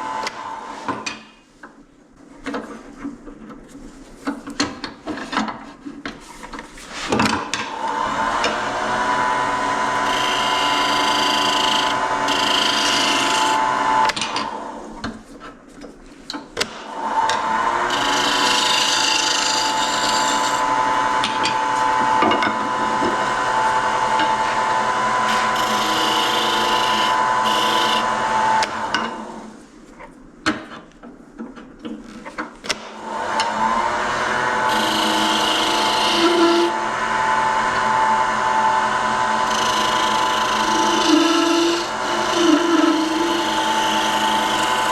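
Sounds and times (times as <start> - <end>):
tool scraping spinning wood: 6.7 - 14.6, 16.8 - 28.9, 33.0 - 36.8, 38.9 - 44.9
lathe motor hum: 7.7 - 14.8, 16.9 - 29.4, 32.9 - 44.9.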